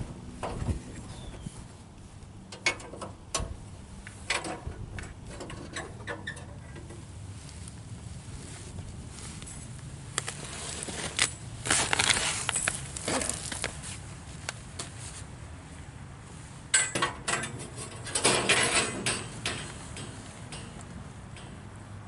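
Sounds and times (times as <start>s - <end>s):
metal clattering and scraping: 16.8s - 22.0s.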